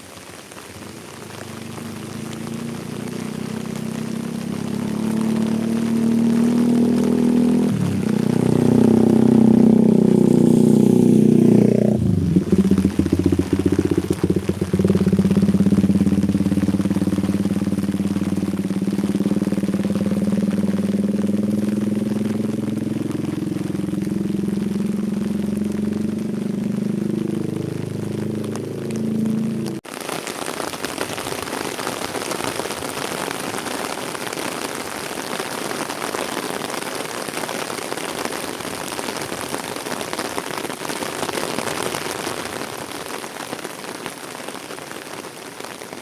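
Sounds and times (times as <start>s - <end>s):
small motorcycle engine running: 1.0s - 29.8s.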